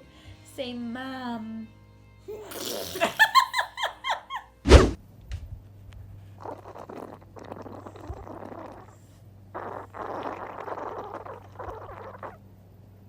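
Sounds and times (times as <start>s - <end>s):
baby farting: 2.4s - 3.3s, 6.4s - 12.4s
steady low hum: 3.2s - 13.0s.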